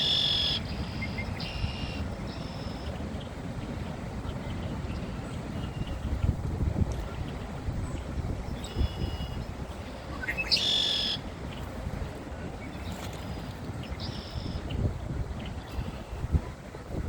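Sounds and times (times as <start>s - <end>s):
songbird call: 0.0s - 3.3s, 7.1s - 11.7s, 12.6s - 16.2s.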